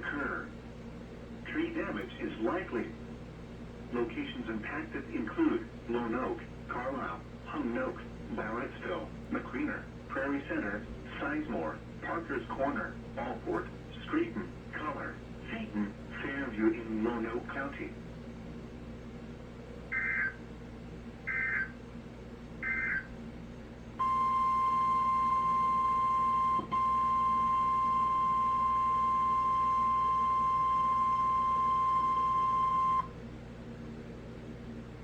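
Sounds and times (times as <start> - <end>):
faint low hum: 0.0 - 35.0
steady warning alarm tone: 19.9 - 20.4, 21.3 - 21.8, 22.6 - 23.1, 24.0 - 33.1.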